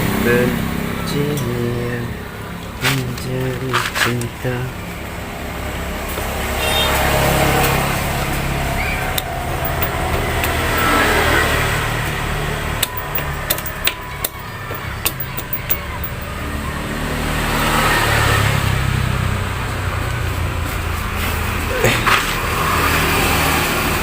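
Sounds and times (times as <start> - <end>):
vehicles passing: 0.0 - 24.0
sharp clicks and taps: 9.2 - 10.9, 12.8 - 16.3.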